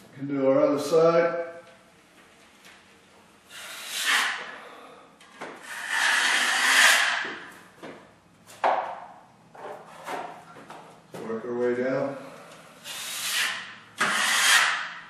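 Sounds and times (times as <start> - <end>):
drywall knife scraping: 3.5 - 4.5, 5.6 - 7.5, 12.8 - 15.0.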